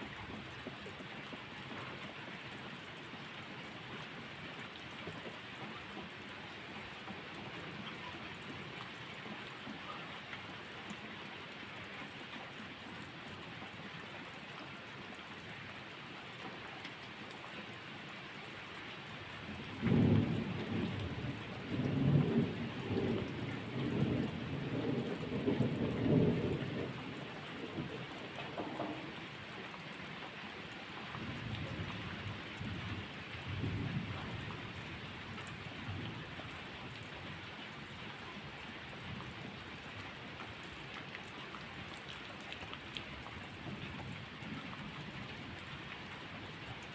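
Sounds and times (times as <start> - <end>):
steady rain falling: 0.0 - 46.9
thunder clap and rumble: 19.6 - 29.3, 31.2 - 36.2.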